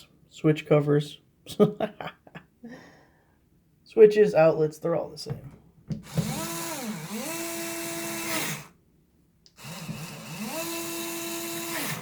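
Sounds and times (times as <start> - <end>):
cordless screwdriver motor whine: 6.0 - 8.7, 9.6 - 12.0.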